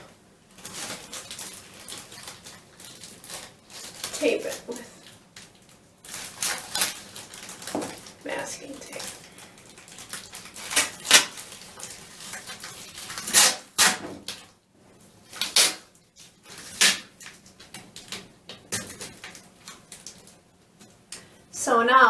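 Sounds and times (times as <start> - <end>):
plastic bag crinkling: 0.4 - 21.0
masking tape pulled off roll: 5.4 - 8.1, 9.7 - 14.4, 15.3 - 18.1.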